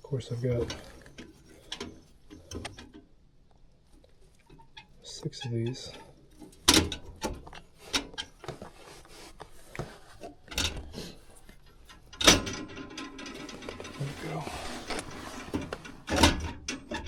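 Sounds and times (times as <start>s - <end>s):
small clicks and scrapes: 0.5s - 17.0s
metal burners knocking and rattling: 5.8s - 8.7s, 10.2s - 17.0s.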